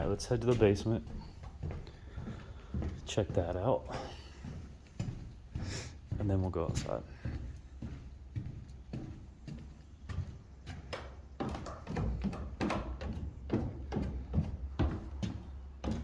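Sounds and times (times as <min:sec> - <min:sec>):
footsteps going down stairs: 0:00.0 - 0:16.0.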